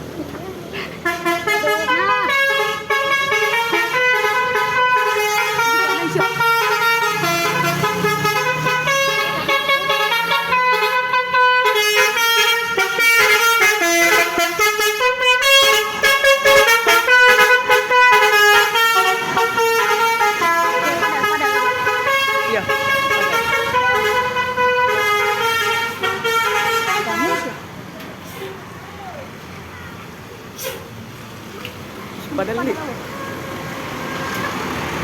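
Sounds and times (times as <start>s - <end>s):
musical air horn melody: 1.0s - 27.6s.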